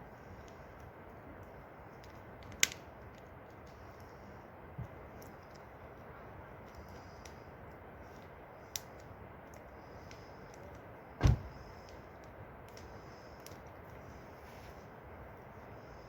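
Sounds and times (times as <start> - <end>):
steady low hiss: 0.0 - 16.0
loud short thump: 11.2 - 11.5
faint clicks: 11.8 - 14.0.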